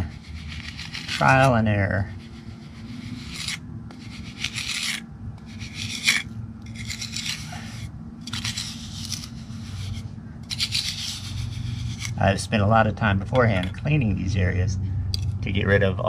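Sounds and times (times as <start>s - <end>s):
trowel scraping cement on concrete: 0.0s - 12.4s.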